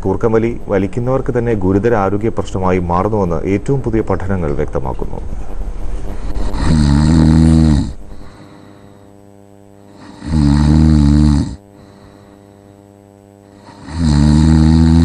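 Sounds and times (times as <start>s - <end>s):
person snoring: 6.2s - 9.2s, 9.8s - 12.8s, 13.4s - 15.0s.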